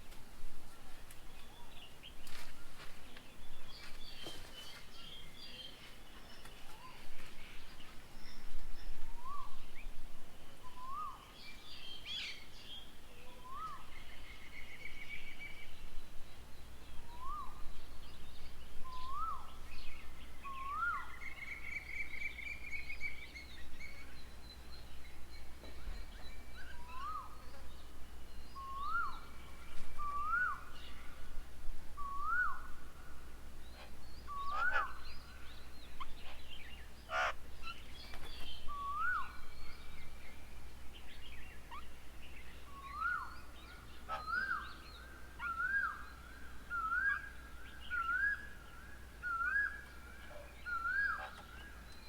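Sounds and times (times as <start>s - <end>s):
birds chirping and trilling: 41.3s - 48.4s, 49.2s - 52.0s.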